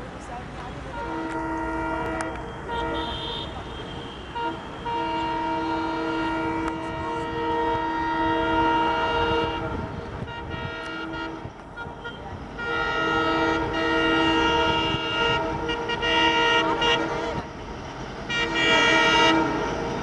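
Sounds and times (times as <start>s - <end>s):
locomotive rumble: 0.0s - 20.0s
locomotive horn blasts: 0.9s - 17.5s, 18.3s - 20.0s.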